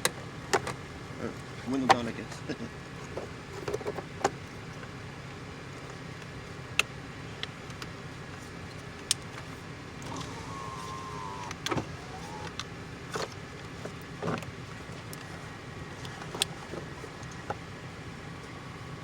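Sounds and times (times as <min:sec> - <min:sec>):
power window motor whine: 0:09.9 - 0:13.9.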